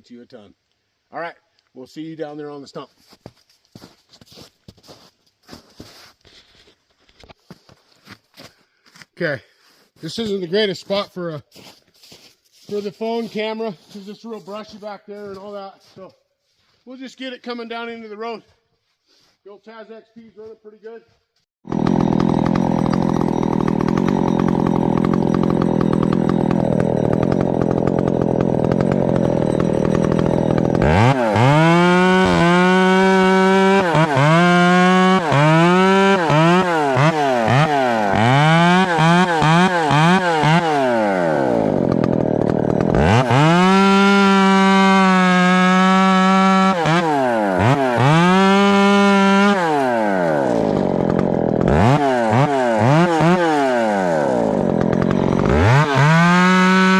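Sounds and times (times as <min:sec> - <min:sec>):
chainsaw revving: 0:21.6 - 0:56.9.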